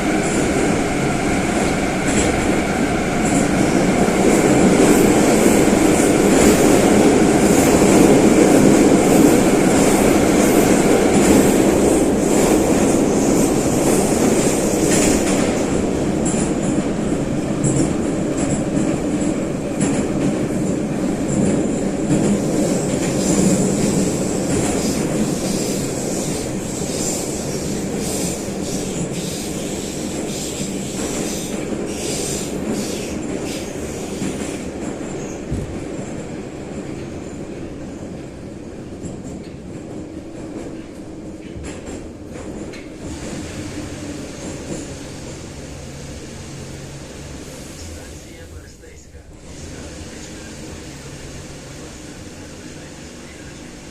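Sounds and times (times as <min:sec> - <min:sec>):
metro wheel and rail noise: 0:00.0 - 0:53.9
rail-joint clicks: 0:13.9 - 0:36.1, 0:38.9 - 0:46.0.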